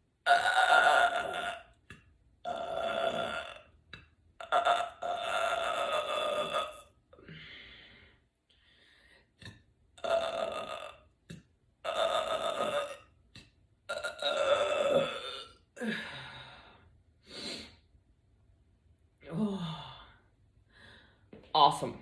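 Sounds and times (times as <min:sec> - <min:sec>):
woman burping loudly: 0:00.2 - 0:06.9, 0:10.0 - 0:13.1, 0:13.9 - 0:16.2.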